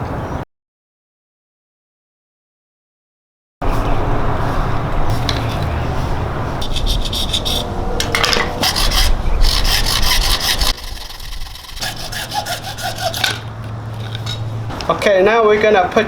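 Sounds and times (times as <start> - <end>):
hand tool rasping strokes: 6.6 - 14.4.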